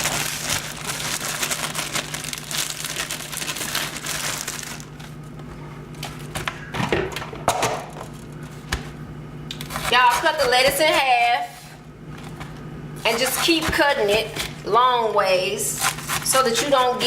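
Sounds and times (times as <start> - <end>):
lettuce crinkling and crunching: 0.0 - 5.4
low steady hum: 0.0 - 17.0.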